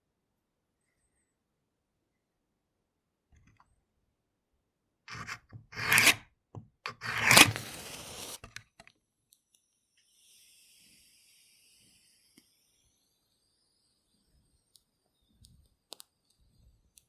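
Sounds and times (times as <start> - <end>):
match striking on matchbox: 5.1 - 6.2, 6.9 - 8.5
hissing match flare: 7.0 - 8.5.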